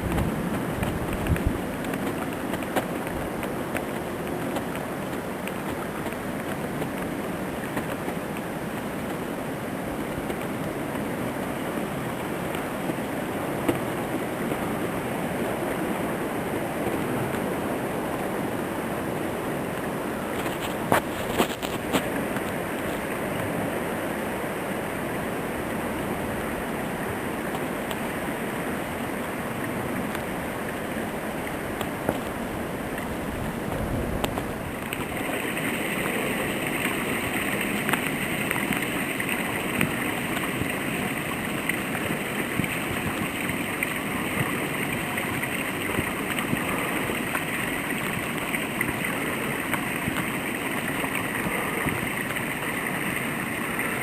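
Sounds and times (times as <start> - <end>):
storm wind rushing: 32.5 - 36.8.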